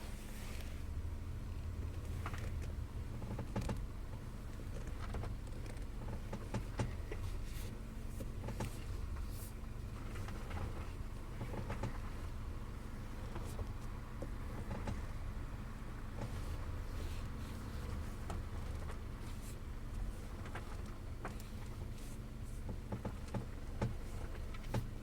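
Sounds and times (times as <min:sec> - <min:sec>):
low hum of car: 0:00.0 - 0:25.0
steering wheel creaking: 0:04.6 - 0:15.3, 0:16.0 - 0:25.0.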